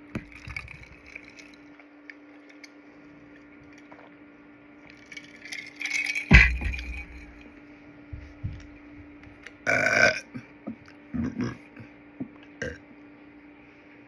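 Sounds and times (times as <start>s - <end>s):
faint steady hum: 0.0s - 14.0s
loud thump: 6.3s - 7.4s.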